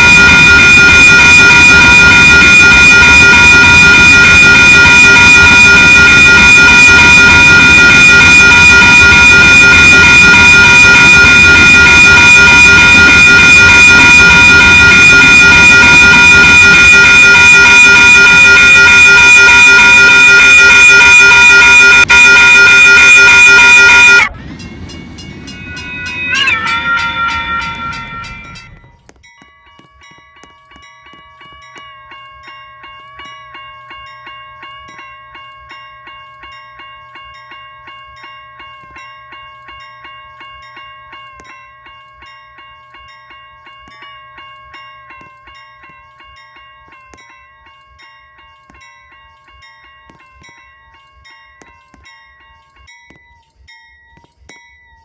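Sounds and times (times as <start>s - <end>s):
locomotive horn chord: 0.0s - 28.9s
railroad crossing bell ringing: 0.0s - 55.0s
train rumble: 24.3s - 31.9s.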